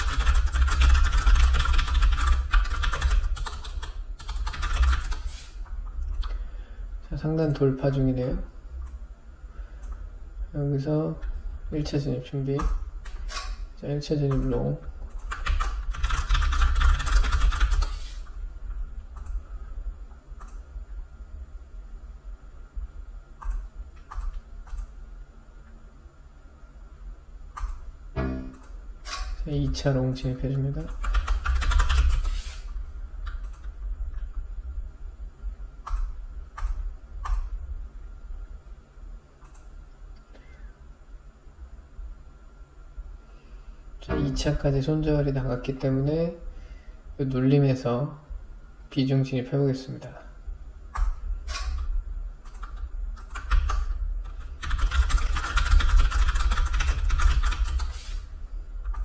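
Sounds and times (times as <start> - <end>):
typing on computer keyboard: 0.0 - 5.2, 14.3 - 17.9, 30.8 - 32.3, 52.5 - 57.9
steady low rumble: 0.0 - 40.2
low steady hum: 0.0 - 59.0
keyboard and mouse clicks: 19.1 - 19.4, 20.4 - 20.6, 23.4 - 24.9, 27.6 - 29.3, 35.8 - 37.5, 50.9 - 53.9.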